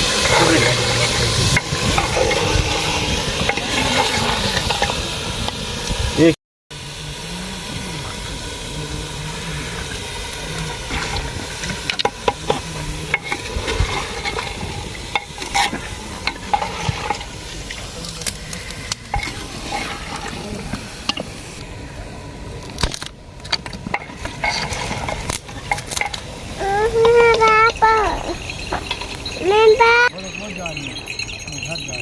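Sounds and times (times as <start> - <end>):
chicken sizzling in a pot: 0.0 - 23.0, 23.9 - 32.0
spoon scraping and clinking pot: 11.9 - 17.4, 27.0 - 29.6.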